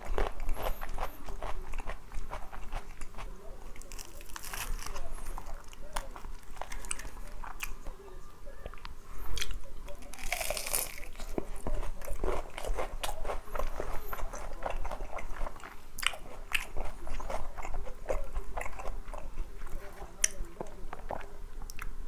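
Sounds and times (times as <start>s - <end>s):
crunching fried chicken: 0.0s - 22.0s.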